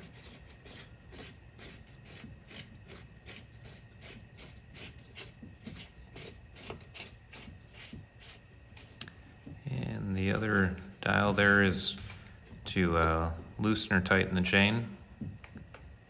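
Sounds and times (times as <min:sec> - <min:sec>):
thumb screw scraping: 0:00.0 - 0:09.1.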